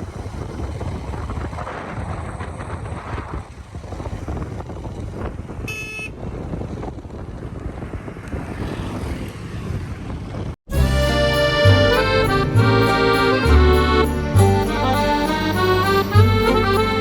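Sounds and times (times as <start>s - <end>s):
wind buffeting microphone: 0.0s - 10.6s.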